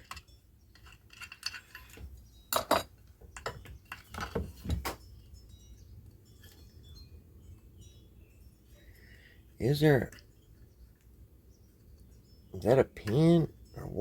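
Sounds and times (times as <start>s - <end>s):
metal tools clinking: 0.0s - 7.7s.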